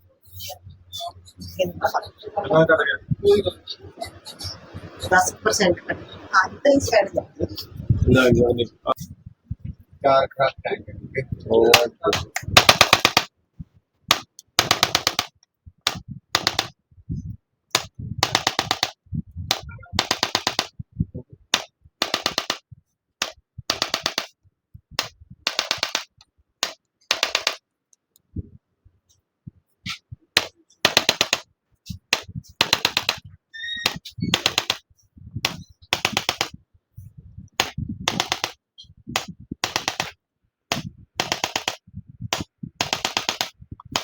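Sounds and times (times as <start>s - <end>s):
rapid percussive tapping on body: 11.7s - 13.3s, 14.1s - 16.8s, 17.7s - 20.8s, 21.5s - 24.4s, 25.0s - 27.6s, 29.9s - 36.6s, 37.6s - 44.0s.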